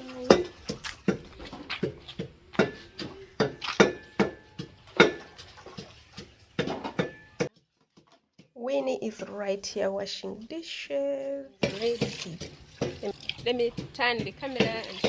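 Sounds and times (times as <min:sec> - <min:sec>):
pestle pounding in mortar: 0:00.2 - 0:08.5, 0:11.6 - 0:15.0.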